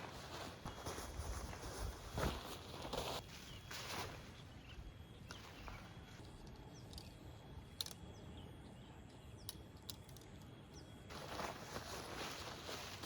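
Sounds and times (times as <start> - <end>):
footstep rustle: 0.0 - 4.7, 11.1 - 13.0.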